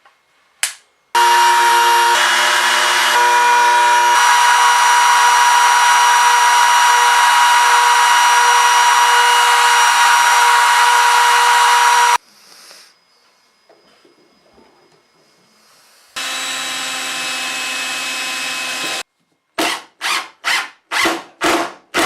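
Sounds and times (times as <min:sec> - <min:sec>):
router high-pitched whine: 0:01.2 - 0:12.2, 0:16.2 - 0:19.0.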